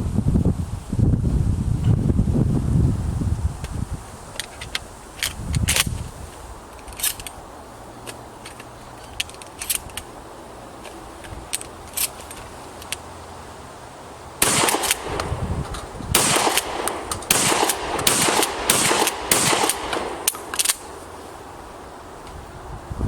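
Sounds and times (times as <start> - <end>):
shotgun blasts with echo: 14.4 - 15.5, 16.1 - 20.6.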